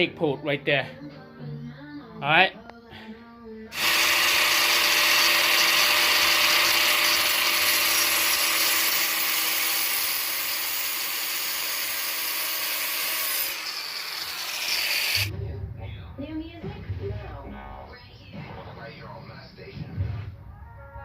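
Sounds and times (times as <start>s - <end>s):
power tool whirring: 3.7s - 15.3s.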